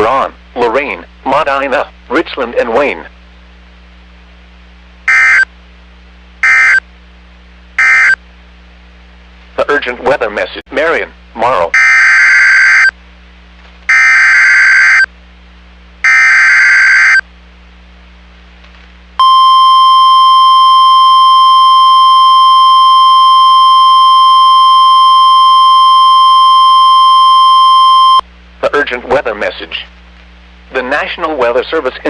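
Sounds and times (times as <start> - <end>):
harsh data squeal: 5.1 - 5.5, 7.8 - 8.2
steady warning alarm tone: 5.1 - 5.5, 6.4 - 6.8, 7.8 - 8.2, 11.7 - 12.9, 13.9 - 15.1, 16.0 - 17.2, 19.2 - 28.2.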